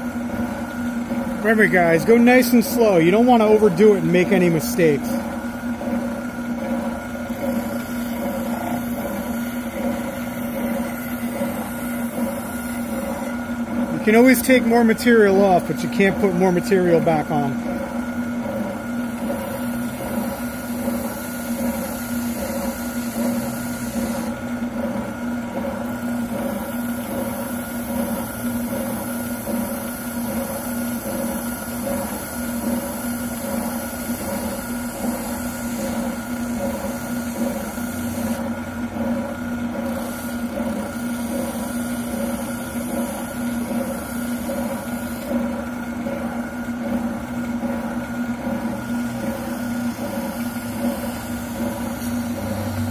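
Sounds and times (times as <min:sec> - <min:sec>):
oscillating sander humming: 0:00.0 - 0:24.4, 0:26.0 - 0:46.7, 0:48.8 - 0:52.9.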